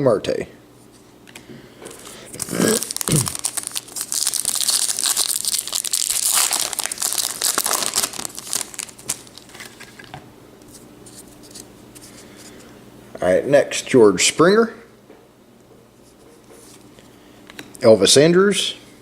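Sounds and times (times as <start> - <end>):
foil wrapper tearing and crinkling: 2.3 - 9.8.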